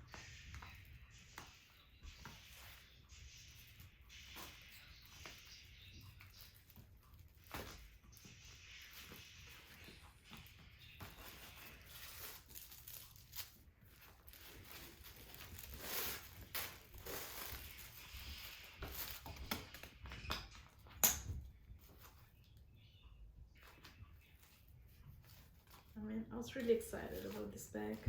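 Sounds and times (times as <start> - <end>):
packaging crinkling and rustling: 8.8 - 20.8, 23.6 - 28.0.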